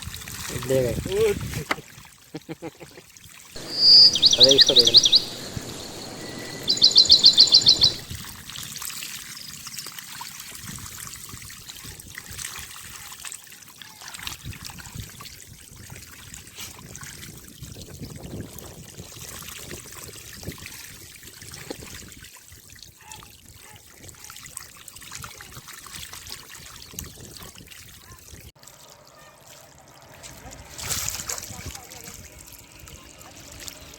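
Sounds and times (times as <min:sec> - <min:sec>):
water trickling and lapping: 0:00.0 - 0:33.9
high rapid chirping trill: 0:03.6 - 0:08.1
faint splashes: 0:23.9 - 0:33.9.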